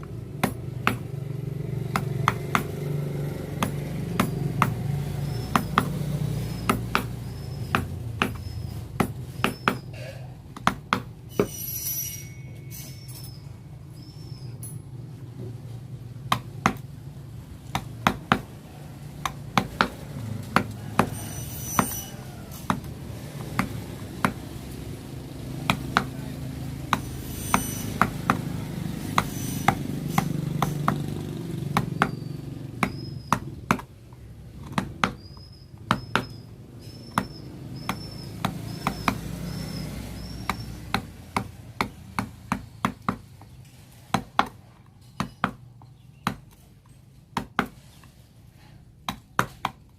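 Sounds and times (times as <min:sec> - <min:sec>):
mallet striking chisel in wood: 0:00.4 - 0:01.1, 0:01.9 - 0:02.8, 0:03.6 - 0:04.8, 0:05.4 - 0:09.9, 0:10.5 - 0:11.5, 0:16.3 - 0:16.9, 0:17.6 - 0:18.5, 0:19.2 - 0:22.0, 0:22.6 - 0:24.4, 0:25.7 - 0:26.2, 0:26.9 - 0:31.0, 0:32.8 - 0:33.9, 0:34.6 - 0:36.4, 0:40.4 - 0:43.3, 0:44.1 - 0:44.6, 0:45.2 - 0:45.6, 0:46.2 - 0:46.6, 0:47.4 - 0:47.8, 0:49.0 - 0:49.8.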